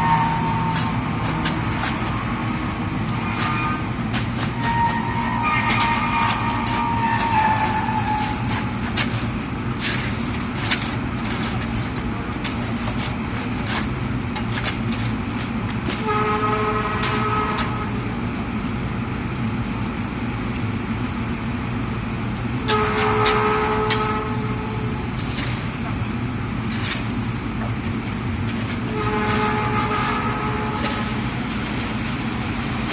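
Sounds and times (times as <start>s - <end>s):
horn-like tone: 0.0s - 1.0s, 3.1s - 8.6s, 16.0s - 18.0s, 22.7s - 25.5s, 28.9s - 31.3s
heavy machinery engine drone: 0.0s - 32.9s.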